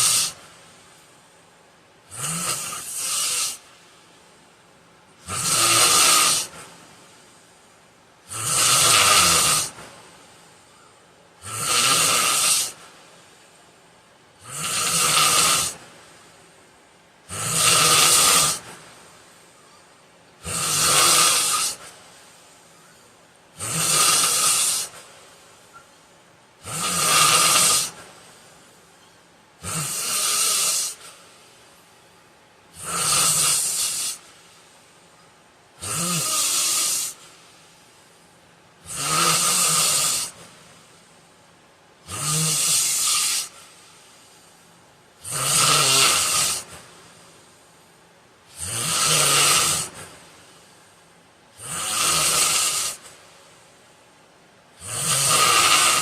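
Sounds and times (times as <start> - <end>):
man snoring: 0.0 - 0.4, 2.1 - 3.7, 5.2 - 6.7, 8.2 - 9.8, 11.4 - 12.8, 14.4 - 15.8, 17.3 - 18.8, 20.4 - 21.9, 23.6 - 25.1, 26.6 - 28.0, 29.6 - 31.1, 32.8 - 34.2, 35.8 - 37.2, 38.8 - 40.4, 42.0 - 43.6, 45.2 - 46.8, 48.5 - 50.0, 51.6 - 53.0, 54.8 - 56.0
quiet breathing: 18.5 - 26.7, 27.6 - 29.3, 42.5 - 44.9, 49.8 - 51.2.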